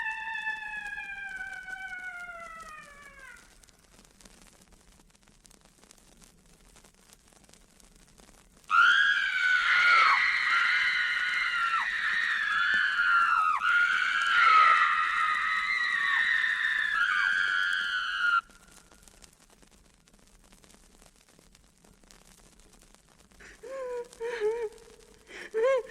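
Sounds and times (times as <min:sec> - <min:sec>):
person screaming: 0:08.7 - 0:18.4.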